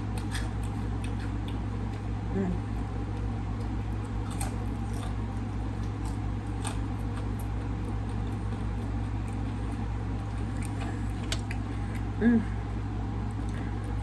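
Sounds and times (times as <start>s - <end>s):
person chewing food: 0.0s - 12.3s
low electrical hum: 0.0s - 14.0s.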